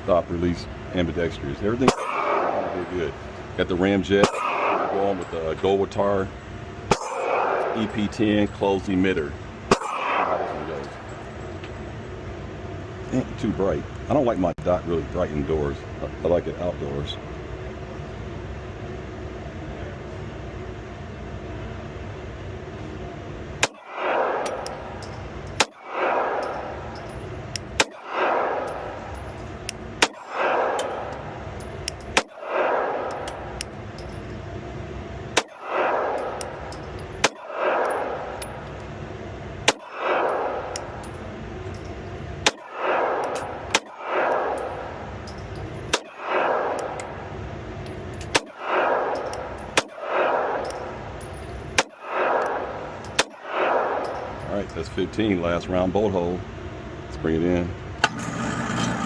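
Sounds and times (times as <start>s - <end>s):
steady hum of range: 0.0s - 59.0s
pistol shots echoing indoors: 1.8s - 2.9s, 4.2s - 5.4s, 6.9s - 8.2s, 9.7s - 10.8s, 23.6s - 33.7s, 35.3s - 38.8s, 39.6s - 41.1s, 42.4s - 47.4s, 48.1s - 51.2s, 51.8s - 54.4s.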